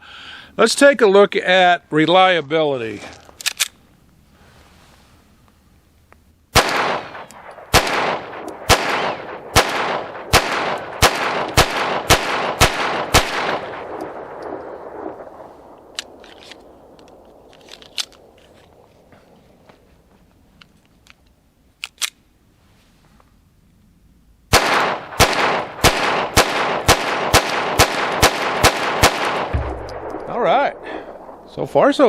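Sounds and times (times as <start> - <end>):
pistol shots with echo: 6.5 - 17.5, 24.5 - 32.0.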